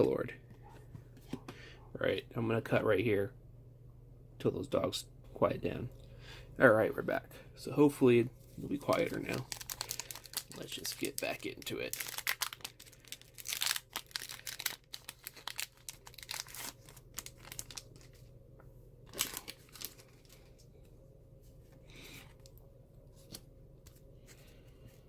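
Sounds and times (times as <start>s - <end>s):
plastic and foil packaging crinkling: 8.5s - 18.3s, 19.1s - 20.8s.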